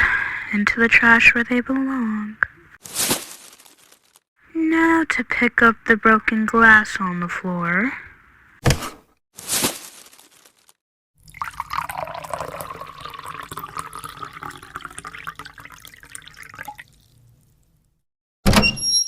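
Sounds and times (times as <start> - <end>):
drink pouring into a glass: 11.2 - 17.3.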